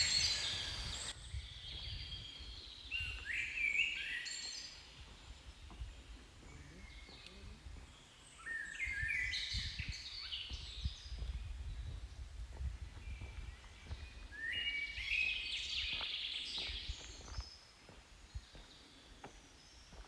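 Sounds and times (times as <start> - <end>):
songbird chirping: 0.0 - 20.0.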